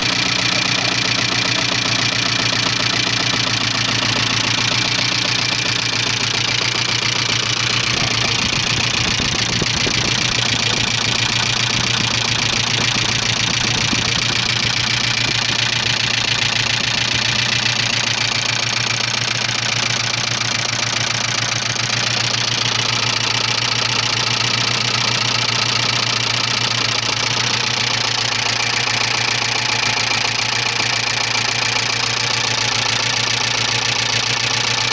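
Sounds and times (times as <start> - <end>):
car engine idling: 0.0 - 34.9
rapid knocking inside engine: 0.0 - 34.9.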